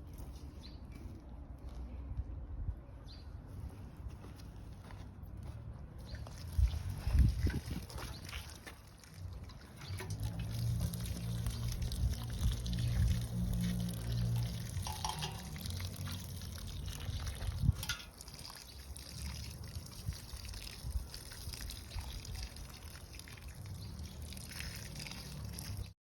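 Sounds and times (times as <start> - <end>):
water pouring and trickling: 6.0 - 26.0.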